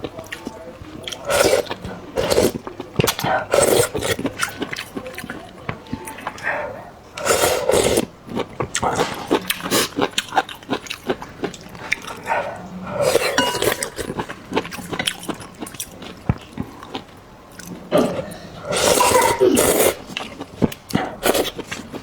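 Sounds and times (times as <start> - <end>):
chewing with wet clicks: 0.0 - 6.5, 7.2 - 22.0
slurping noodles: 1.2 - 4.6, 7.2 - 8.1, 12.8 - 14.2, 18.0 - 20.5.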